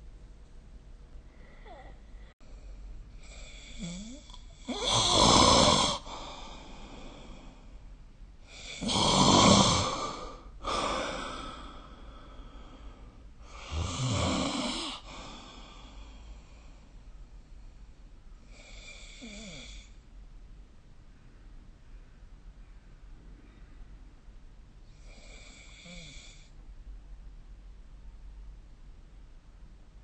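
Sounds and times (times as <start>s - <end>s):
soft breath: 1.1s - 4.9s, 6.0s - 8.9s, 9.8s - 20.0s
person snoring loudly: 3.2s - 7.2s, 8.5s - 11.7s, 13.5s - 15.9s, 18.6s - 19.9s.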